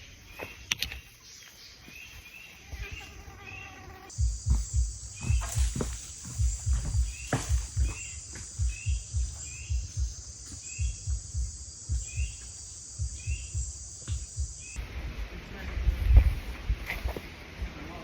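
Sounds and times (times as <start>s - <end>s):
insects droning: 0.0s - 18.0s
low thuds: 4.1s - 15.2s.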